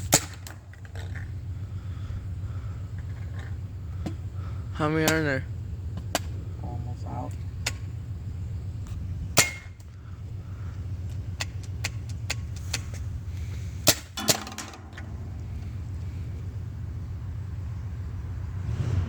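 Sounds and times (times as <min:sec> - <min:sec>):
paintball gun shots: 0:00.0 - 0:00.6, 0:09.4 - 0:09.9, 0:13.8 - 0:15.5
steady low hum: 0:00.0 - 0:19.0.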